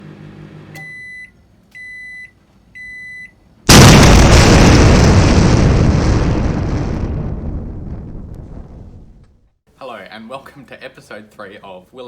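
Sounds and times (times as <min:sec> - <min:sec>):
loud explosion blast: 0:03.7 - 0:09.5.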